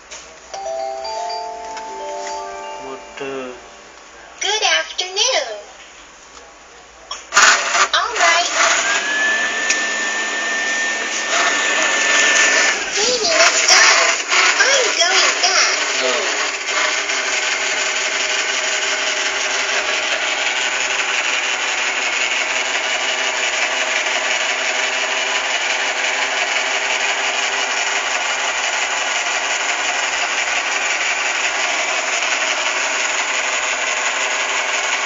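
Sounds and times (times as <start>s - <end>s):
robot vacuum whirring: 7.3s - 20.4s.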